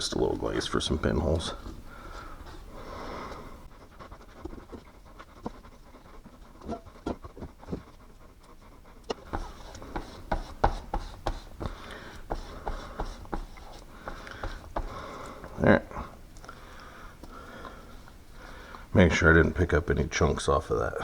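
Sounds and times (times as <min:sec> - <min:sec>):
stir stick scraping filler: 0:09.1 - 0:15.2.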